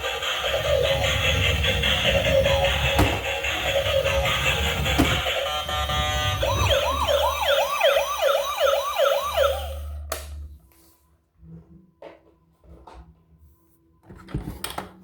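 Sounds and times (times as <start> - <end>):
electronic toy siren yelping: 3.5 - 10.0.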